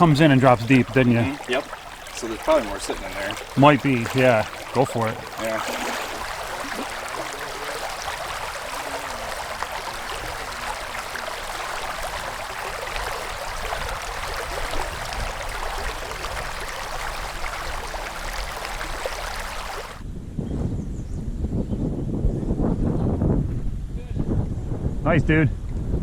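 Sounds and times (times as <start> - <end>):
creek water running: 0.0 - 20.0.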